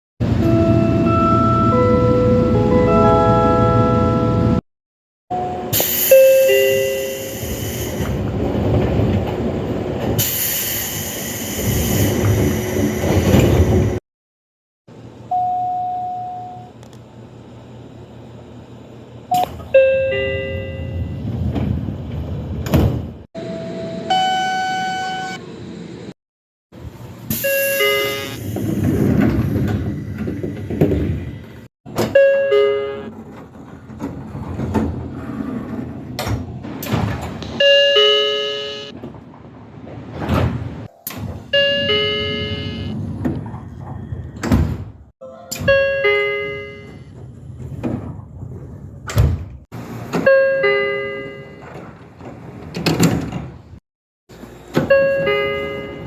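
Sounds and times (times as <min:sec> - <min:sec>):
trains in stations: 0:00.2 - 0:04.6, 0:05.3 - 0:14.0, 0:14.9 - 0:26.2, 0:26.8 - 0:56.0
train doors sliding: 0:05.6 - 0:14.0, 0:19.2 - 0:23.3, 0:26.8 - 0:56.0
single-tone door signals: 0:15.3 - 0:16.7, 0:19.3 - 0:21.2, 0:23.5 - 0:25.4, 0:32.0 - 0:33.2, 0:37.6 - 0:39.0, 0:40.8 - 0:43.0, 0:45.2 - 0:47.2, 0:50.2 - 0:51.8, 0:54.8 - 0:56.0
two-note falling door chimes: 0:41.0 - 0:43.0, 0:45.2 - 0:47.1.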